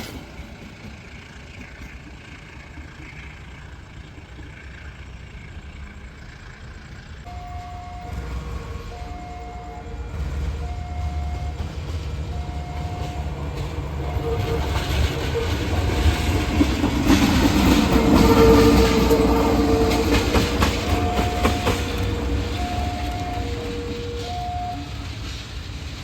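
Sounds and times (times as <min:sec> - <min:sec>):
train rumble: 0:00.0 - 0:26.0
wheels clicking over rail joints: 0:00.0 - 0:26.0
two-note electronic tone: 0:07.3 - 0:10.0, 0:20.8 - 0:25.0
train horn blast: 0:07.3 - 0:16.6, 0:17.6 - 0:25.1.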